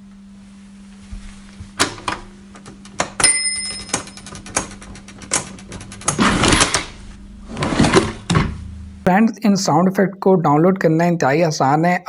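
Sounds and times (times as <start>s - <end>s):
steady low hum: 0.0s - 12.0s
typewriter keys clacking: 2.6s - 6.2s
typewriter bell ding: 3.2s - 4.4s.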